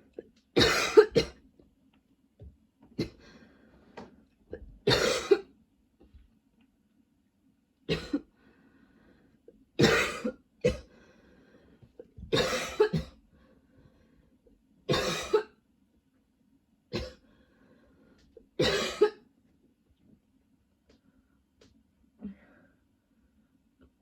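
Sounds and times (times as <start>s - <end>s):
woman coughing: 0.6s - 1.4s, 4.9s - 5.5s, 7.9s - 8.3s, 9.8s - 10.9s, 12.3s - 13.2s, 14.9s - 15.6s, 18.6s - 19.2s.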